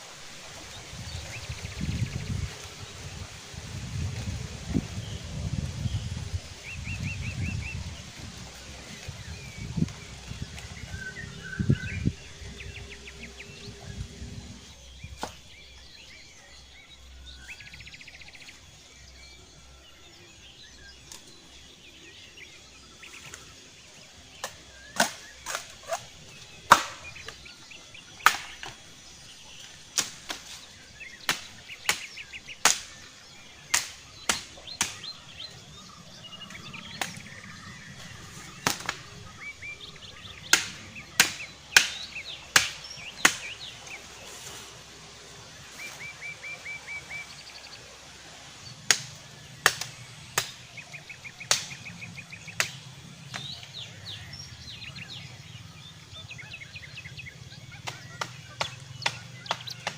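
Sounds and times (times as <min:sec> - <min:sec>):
birds chirping: 0:00.0 - 0:59.9
wood being chopped: 0:15.2 - 0:15.4, 0:24.4 - 0:26.1, 0:26.7 - 0:27.4, 0:28.2 - 0:28.8, 0:29.9 - 0:30.6, 0:31.2 - 0:33.0, 0:33.7 - 0:35.2, 0:38.6 - 0:39.1, 0:40.4 - 0:43.7, 0:48.9 - 0:50.6, 0:51.4 - 0:51.8, 0:52.5 - 0:53.6, 0:57.8 - 0:59.9.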